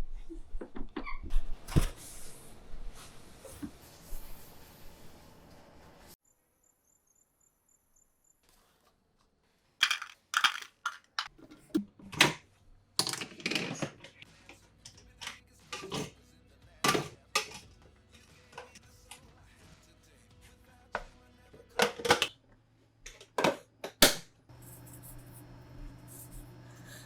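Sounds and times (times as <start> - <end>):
objects clacking in kitchen: 9.8 - 16.2, 16.8 - 17.7, 21.0 - 22.4, 23.1 - 27.0.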